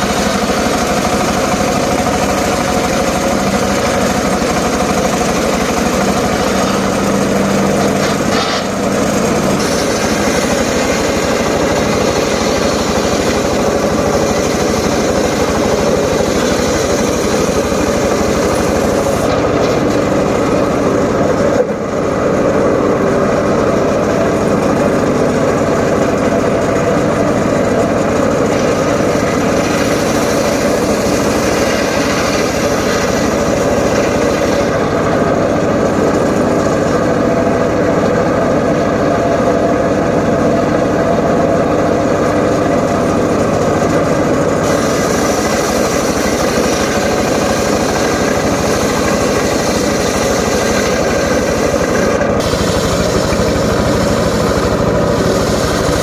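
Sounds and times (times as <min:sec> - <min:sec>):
saw engine running: 0:00.0 - 0:56.0.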